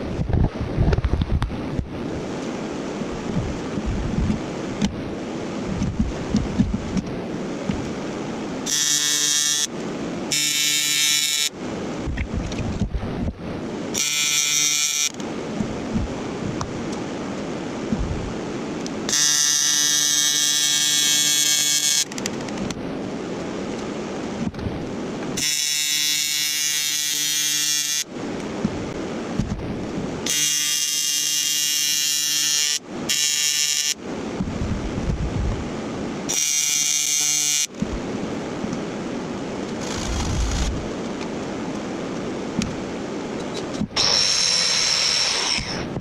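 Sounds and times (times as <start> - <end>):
welding arc buzzing: 8.6 - 11.6, 13.9 - 15.2, 19.1 - 22.2, 25.4 - 28.1, 30.2 - 34.0, 36.3 - 37.7.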